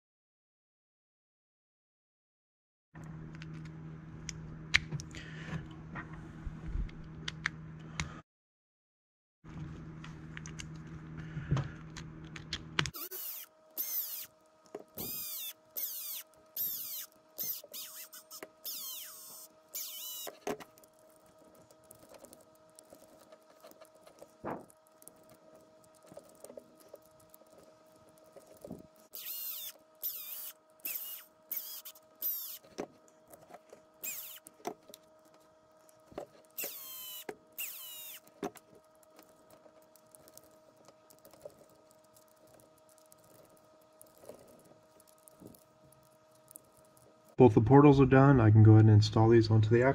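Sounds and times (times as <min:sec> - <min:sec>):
small parts clicking: 0:12.0 - 0:47.4
electric screwdriver motor whine: 0:12.9 - 0:20.8, 0:25.0 - 0:32.8, 0:34.0 - 0:34.8, 0:36.1 - 0:39.4.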